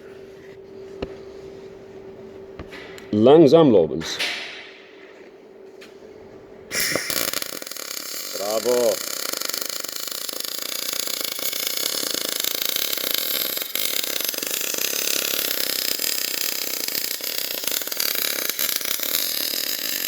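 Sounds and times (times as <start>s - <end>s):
welding arc crackling: 6.7s - 20.0s.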